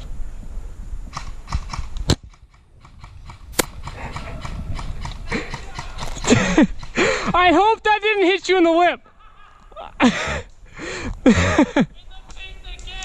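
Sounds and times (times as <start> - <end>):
airsoft gun shots: 3.5 - 4.5.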